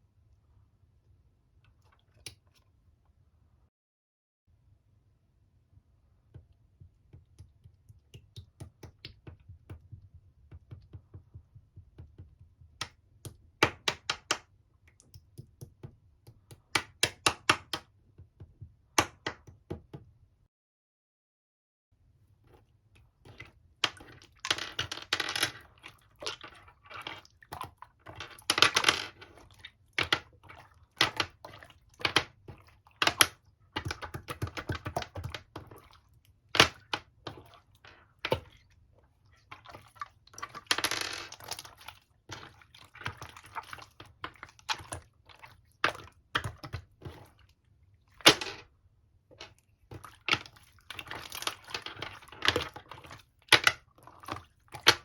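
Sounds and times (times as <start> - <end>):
wet slime squishing: 29.2 - 40.7, 41.3 - 48.2, 49.5 - 55.0.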